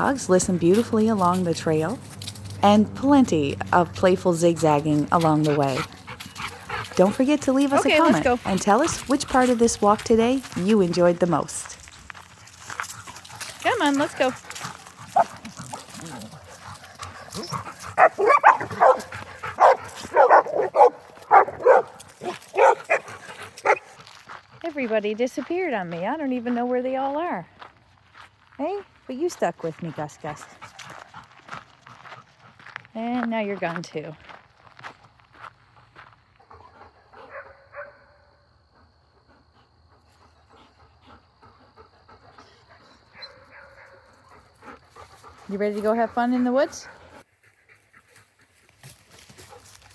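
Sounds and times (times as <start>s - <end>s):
dogs yipping and barking: 5.4s - 8.7s, 12.8s - 24.0s, 36.5s - 38.2s, 41.8s - 44.9s.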